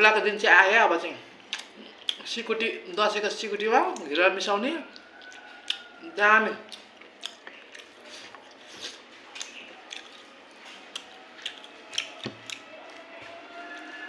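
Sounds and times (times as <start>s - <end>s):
close chewing with mouth smacks: 1.4s - 2.4s, 4.9s - 6.0s, 6.6s - 13.8s.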